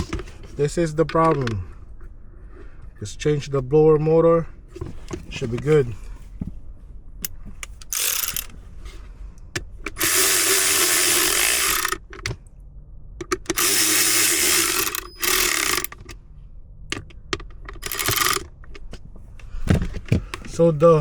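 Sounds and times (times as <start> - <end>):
cordless power driver running: 7.8 - 8.6, 9.9 - 12.2, 13.4 - 16.2, 17.8 - 18.5
small clicks and handling noise: 16.9 - 20.6.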